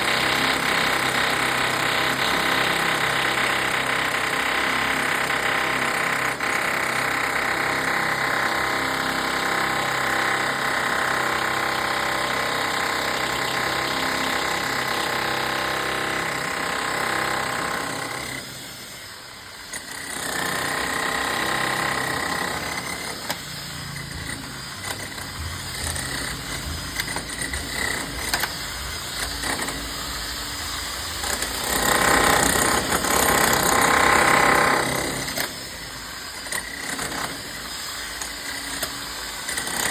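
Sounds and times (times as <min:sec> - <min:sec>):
power drill boring into concrete: 0:00.0 - 0:39.9.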